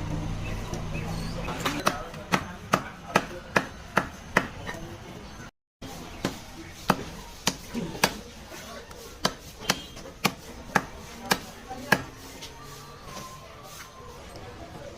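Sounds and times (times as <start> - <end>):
knife chopping raw chicken: 1.8 - 4.6, 6.1 - 8.3, 8.9 - 12.3.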